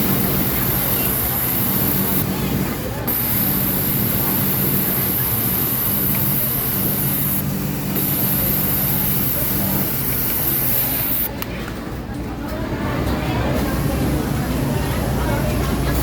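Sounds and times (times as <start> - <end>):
sewing machine running: 0.0 - 11.3.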